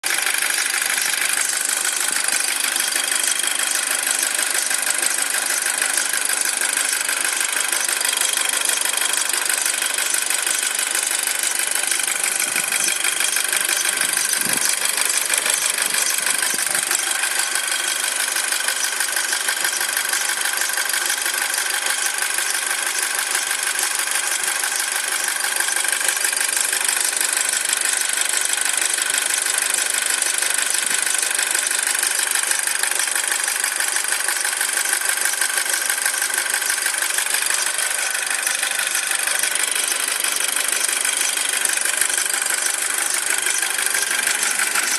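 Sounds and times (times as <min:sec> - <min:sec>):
car engine idling: 0:00.0 - 0:44.9
fast squeaking chirping: 0:11.4 - 0:19.9, 0:37.1 - 0:44.9.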